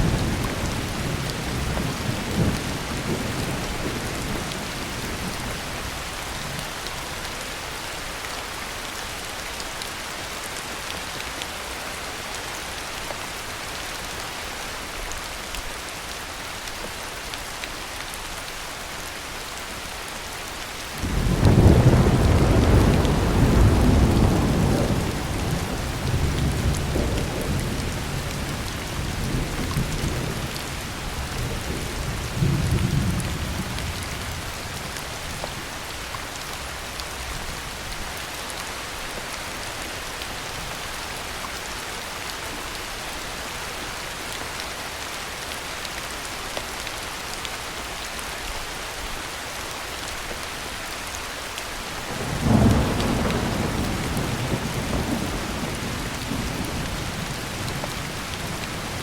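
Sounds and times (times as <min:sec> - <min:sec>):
heavy rain: 0:00.0 - 0:59.0
thunderclap: 0:21.0 - 0:27.9, 0:52.2 - 0:57.8
thunder rumbling: 0:21.0 - 0:34.6, 0:52.1 - 0:59.0.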